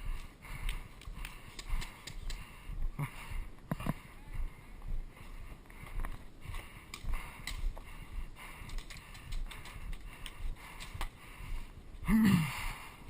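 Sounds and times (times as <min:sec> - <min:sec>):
footsteps walking: 0:00.0 - 0:12.1
gear clicking and rattling: 0:01.0 - 0:02.4, 0:06.0 - 0:11.2.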